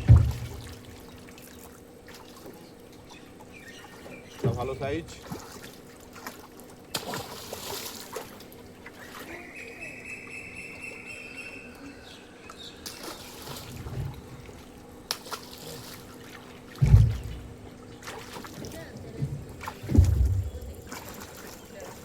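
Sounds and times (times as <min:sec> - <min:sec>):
short sharp splashes: 0:00.0 - 0:02.5, 0:04.3 - 0:09.4, 0:12.8 - 0:22.0
water trickling and splashing: 0:00.0 - 0:10.0, 0:11.7 - 0:22.0.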